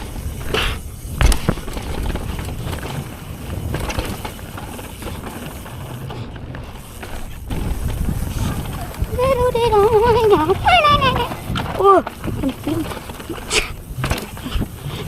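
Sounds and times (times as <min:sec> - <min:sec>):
bike rattling over bumps: 0:00.0 - 0:15.0
bike tyres on dirt: 0:00.0 - 0:15.0
wind buffeting microphone: 0:00.0 - 0:15.0.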